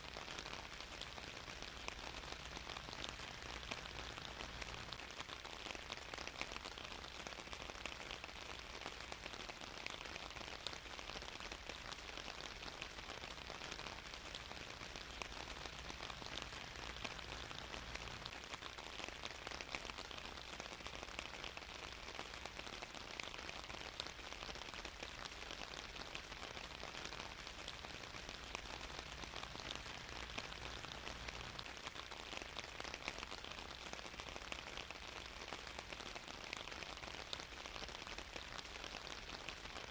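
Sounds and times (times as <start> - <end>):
steady rain patter: 0.0 - 39.9.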